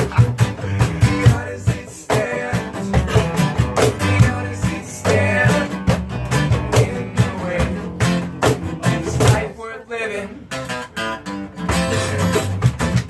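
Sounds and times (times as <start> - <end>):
person singing: 0.0 - 5.9, 6.7 - 10.5
guitar strumming: 0.0 - 9.5, 10.4 - 13.0.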